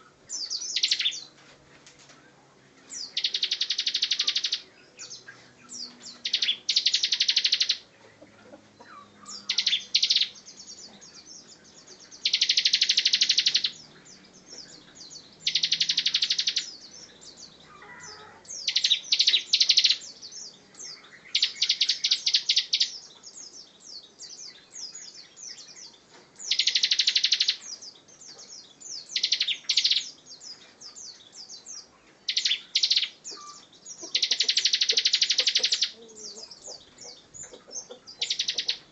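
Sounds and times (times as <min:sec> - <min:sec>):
songbird buzzy rattling trills: 0:02.9 - 0:08.0, 0:09.0 - 0:20.5, 0:26.4 - 0:30.5, 0:32.2 - 0:38.9.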